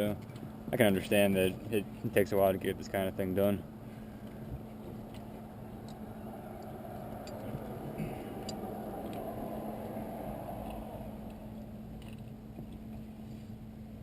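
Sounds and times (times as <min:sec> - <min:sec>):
low hum: 0:03.6 - 0:14.0.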